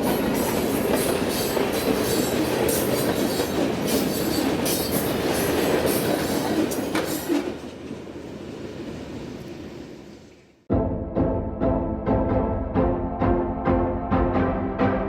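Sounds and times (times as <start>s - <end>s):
train wheels clacking on rails: 0.0s - 8.1s
music: 10.7s - 15.0s.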